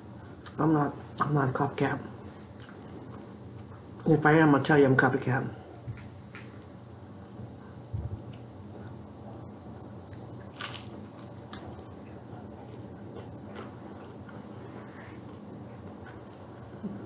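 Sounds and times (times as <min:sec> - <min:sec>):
crunchy bite into fried chicken: 0:10.1 - 0:12.0.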